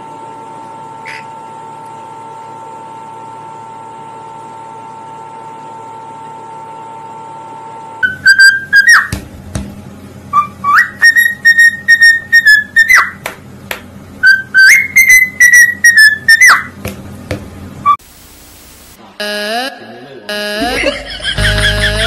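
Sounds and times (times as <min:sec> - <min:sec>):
parrot whistling a tune: 0:08.0 - 0:09.2, 0:10.3 - 0:13.2, 0:14.2 - 0:16.8.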